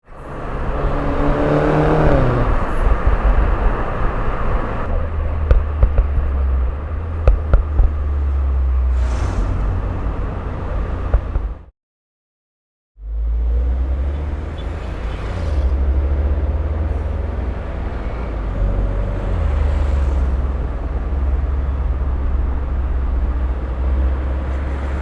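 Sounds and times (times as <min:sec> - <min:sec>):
car engine revving: 0:00.1 - 0:11.6, 0:13.0 - 0:25.0
exhaust pops: 0:05.1 - 0:10.2.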